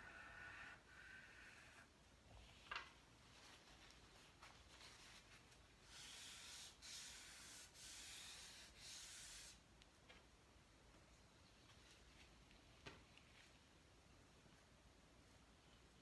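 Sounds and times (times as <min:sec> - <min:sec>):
chalk scratching across paper: 0:04.8 - 0:09.6.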